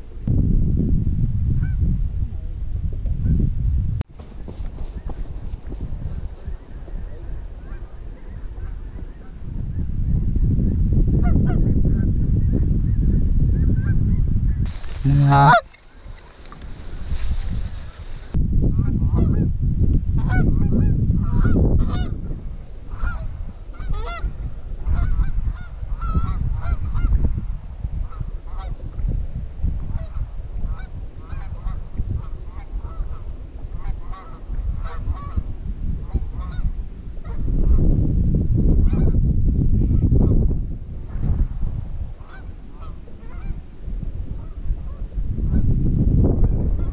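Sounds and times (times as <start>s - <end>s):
wind rumble on microphone: 0.0s - 46.9s
geese honking: 14.7s - 18.4s.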